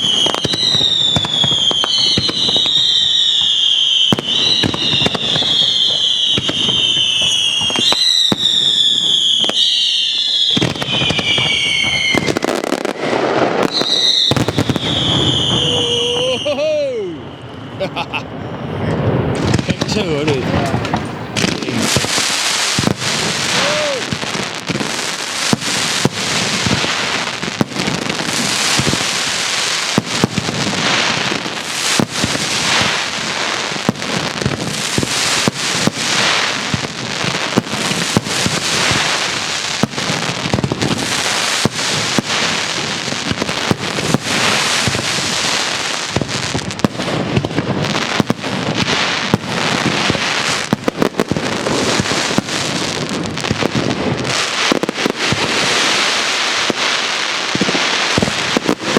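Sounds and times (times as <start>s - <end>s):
fireworks crackling: 0.0s - 58.9s
exploding firework shells banging: 19.3s - 58.9s.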